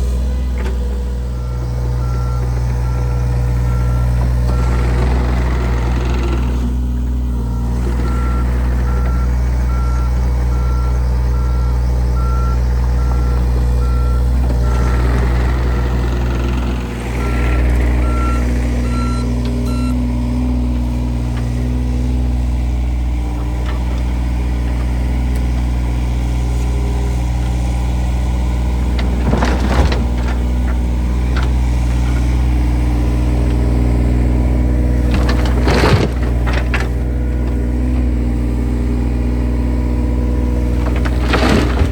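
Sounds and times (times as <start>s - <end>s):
heavy machine engine running: 0.0s - 41.9s
backup alarm beeping: 1.4s - 4.8s, 7.4s - 15.0s, 17.2s - 20.1s.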